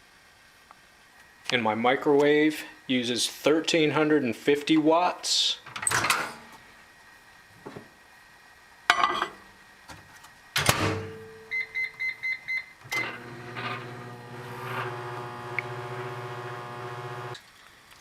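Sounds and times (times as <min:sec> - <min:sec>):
microwave oven humming: 0:11.0 - 0:17.4
keypad beeps: 0:11.5 - 0:12.7.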